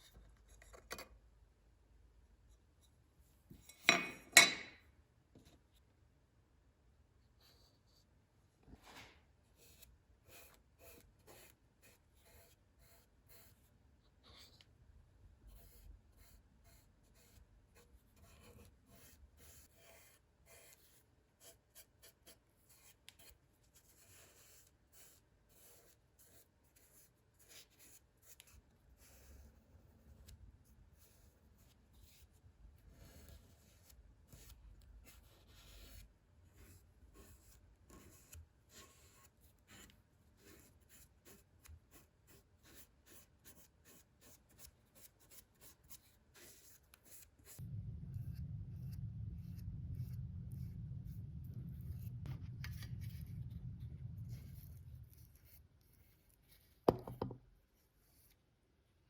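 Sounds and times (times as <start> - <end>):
scratching and rubbing strokes: 44.3 - 56.9.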